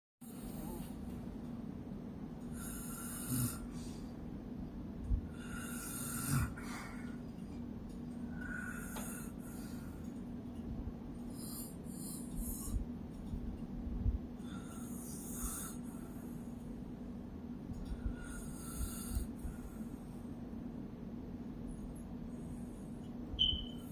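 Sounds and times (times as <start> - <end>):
woman snoring: 0.3 - 1.0, 2.6 - 4.0, 5.3 - 7.1, 18.2 - 19.3.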